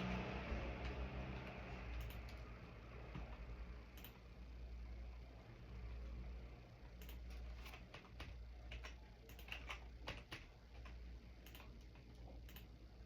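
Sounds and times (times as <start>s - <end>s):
low hum: 0.0s - 13.0s
keyboard typing: 0.8s - 2.4s, 3.1s - 4.2s, 7.0s - 12.7s.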